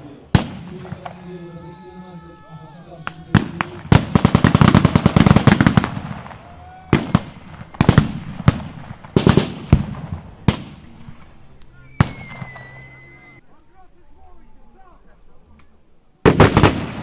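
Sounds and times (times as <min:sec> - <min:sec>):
blank gunfire: 0:03.3 - 0:11.3, 0:16.2 - 0:17.0.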